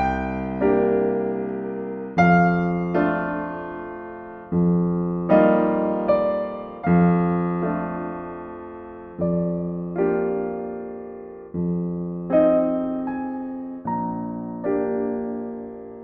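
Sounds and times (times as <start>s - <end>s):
soft piano chords: 0.0s - 16.0s.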